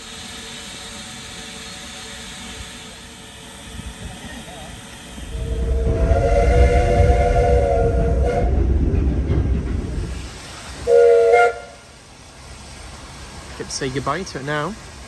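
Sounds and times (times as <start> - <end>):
low rumble of moving train: 0.0 - 15.0
steam locomotive whistle: 5.2 - 8.8, 10.8 - 11.9.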